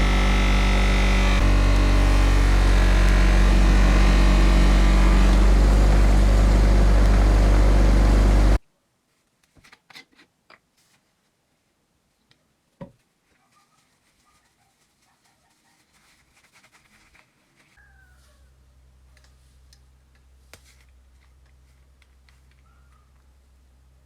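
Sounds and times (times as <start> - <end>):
power tool motor humming: 0.0 - 8.6.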